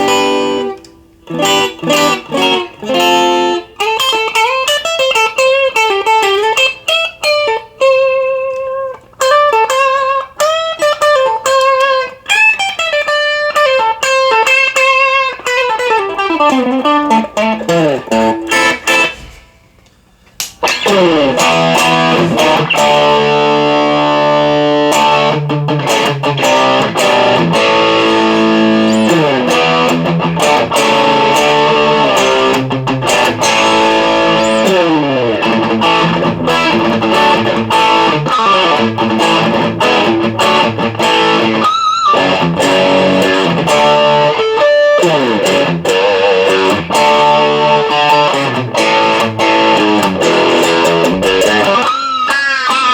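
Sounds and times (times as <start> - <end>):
distorted electric guitar riffs: 0.0 - 19.2, 20.5 - 52.9.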